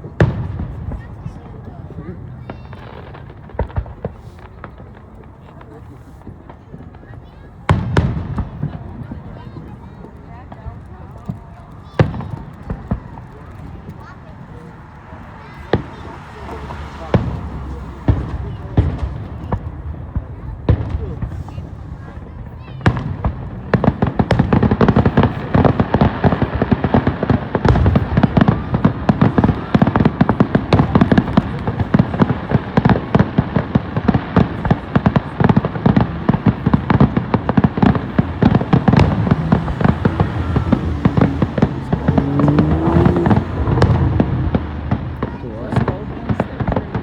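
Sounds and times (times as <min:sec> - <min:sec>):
fireworks bangs and crackles: 0:00.0 - 0:47.0
low booms: 0:12.0 - 0:47.0.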